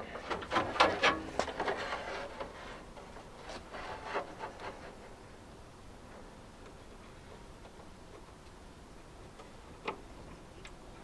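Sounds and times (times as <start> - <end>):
rubbing and rustling: 0.0 - 5.5
handling knocks and scrapes: 0.1 - 5.3.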